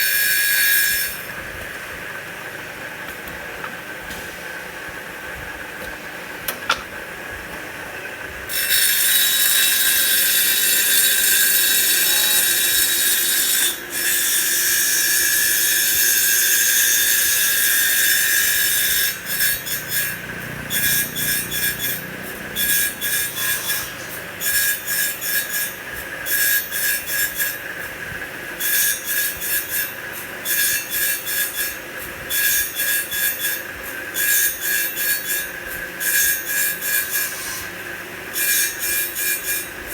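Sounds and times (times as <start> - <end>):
lathe cutting wood: 8.5 - 25.7.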